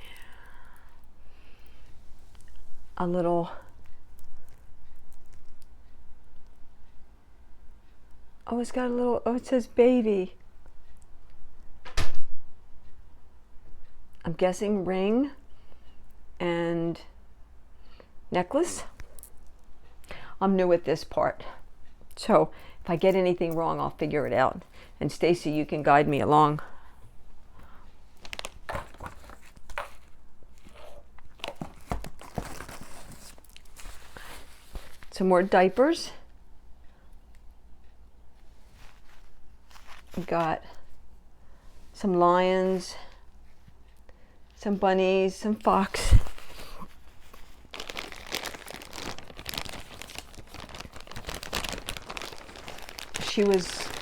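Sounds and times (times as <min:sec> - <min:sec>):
packaging crinkling: 0:28.2 - 0:35.1, 0:46.0 - 0:54.0.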